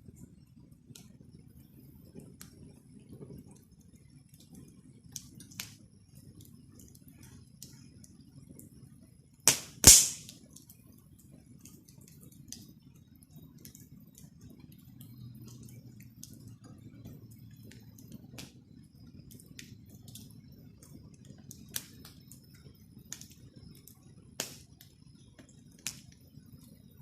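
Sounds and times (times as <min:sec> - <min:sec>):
campfire crackling: 0:00.0 - 0:27.0
burning wood popping: 0:04.3 - 0:08.2, 0:09.4 - 0:27.0.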